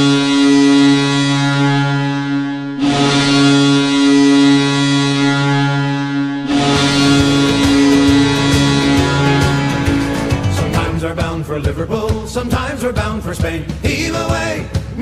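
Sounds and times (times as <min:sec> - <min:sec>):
goal horn blaring: 0:00.0 - 0:11.3.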